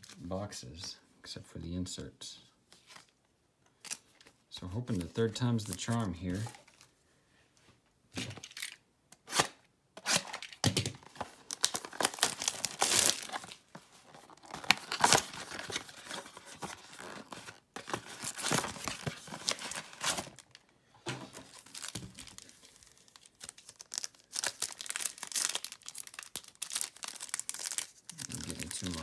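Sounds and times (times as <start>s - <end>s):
packaging tearing and crinkling: 8.4s - 20.6s, 21.5s - 29.0s.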